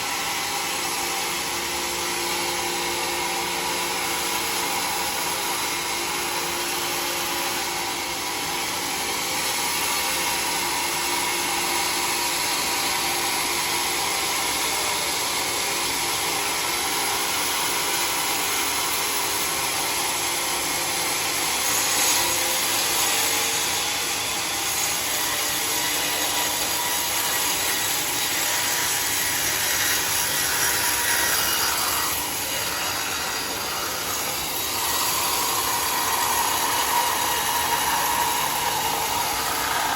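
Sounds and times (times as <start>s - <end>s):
saw cutting through log: 0.0s - 39.9s.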